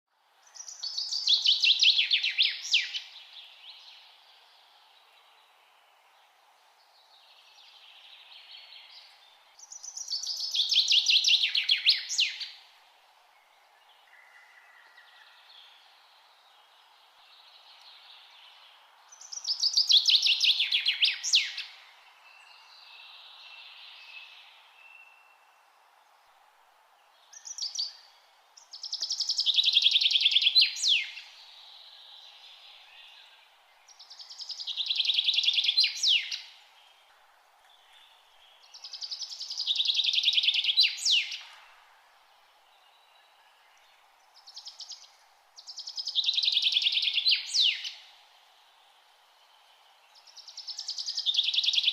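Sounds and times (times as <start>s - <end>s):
steady hiss: 0.2s - 51.9s
faint bird chirps: 13.3s - 26.2s, 27.1s - 51.9s.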